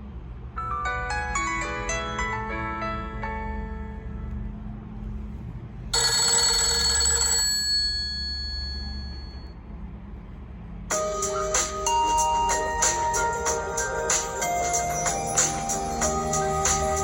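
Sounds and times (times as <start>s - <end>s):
melody ringtone notes: 6.0s - 9.5s, 10.9s - 17.0s
phone ringtone like telephone bell: 6.0s - 9.5s.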